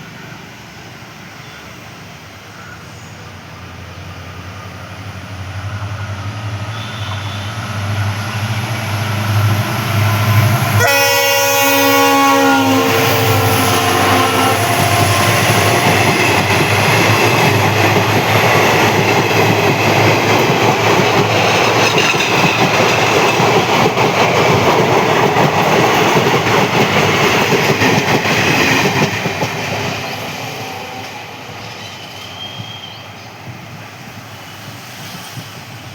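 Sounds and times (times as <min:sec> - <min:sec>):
diesel locomotive engine: 0:00.0 - 0:35.9
train wheels rumbling: 0:00.0 - 0:35.9
multi-tone train horn: 0:06.6 - 0:08.0, 0:10.2 - 0:16.5.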